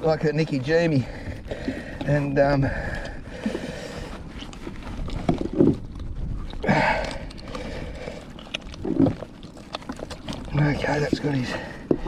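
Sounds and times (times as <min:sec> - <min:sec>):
scraping rustle: 0:03.6 - 0:06.6, 0:07.2 - 0:12.0.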